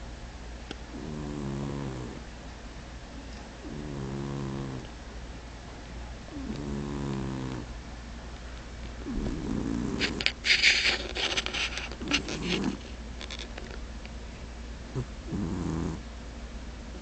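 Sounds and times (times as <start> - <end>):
cat snoring: 0.9 - 2.2, 3.6 - 4.9, 6.3 - 7.7, 9.0 - 10.2, 14.9 - 16.0.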